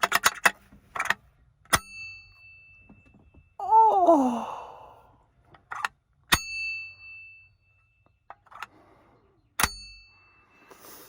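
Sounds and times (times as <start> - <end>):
man groaning: 3.6 - 5.1.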